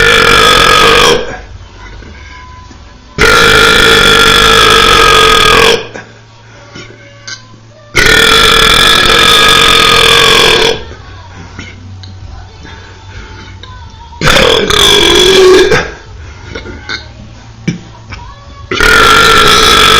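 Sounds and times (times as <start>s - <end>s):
person belching: 0.0s - 1.4s, 3.2s - 6.0s, 8.0s - 10.9s, 14.2s - 16.0s, 18.7s - 19.9s.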